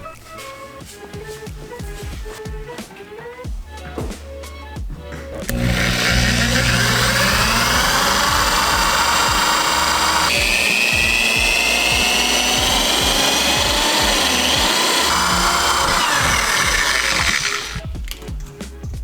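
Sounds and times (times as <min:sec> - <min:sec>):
background music: 0:00.0 - 0:19.0
power drill boring into metal: 0:05.4 - 0:17.9.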